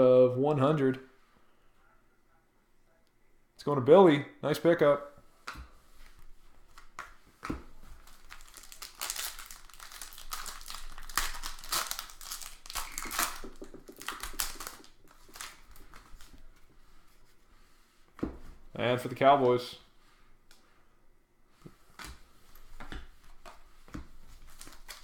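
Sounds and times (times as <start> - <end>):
card wrappers crinkling: 7.8 - 16.4, 24.3 - 25.0.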